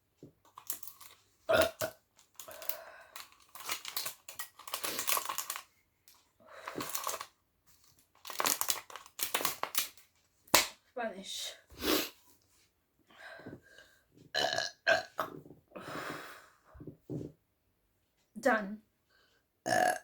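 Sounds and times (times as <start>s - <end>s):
woman burping: 1.5s - 1.9s, 14.4s - 15.3s, 19.7s - 20.0s.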